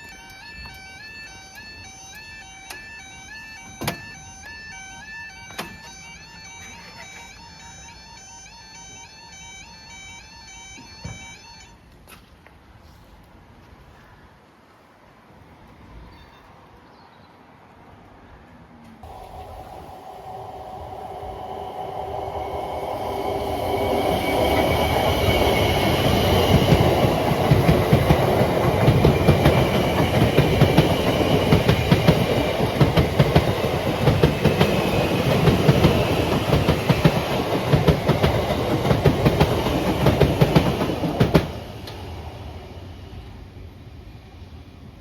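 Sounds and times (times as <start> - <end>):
electric train passing: 0.0 - 11.8, 19.0 - 45.0
faint whine: 19.0 - 24.6
wheels clacking over rail joints: 21.4 - 42.3.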